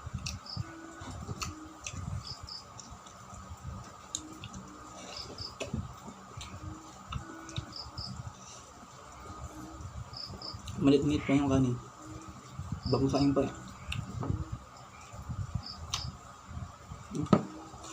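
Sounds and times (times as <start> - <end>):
insect drone: 4.2 - 16.4.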